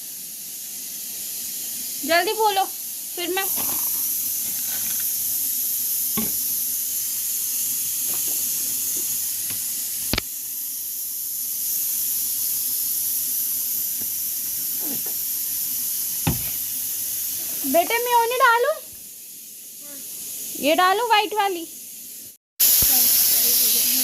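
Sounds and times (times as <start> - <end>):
food sizzling in a pan: 0.0 - 24.0
utensil knocks: 6.2 - 6.4, 16.2 - 16.6.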